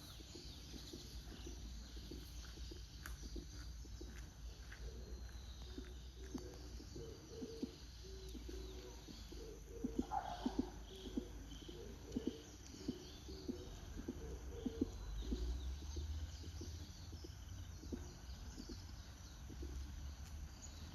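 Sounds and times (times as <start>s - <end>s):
dove cooing: 6.2s - 15.7s.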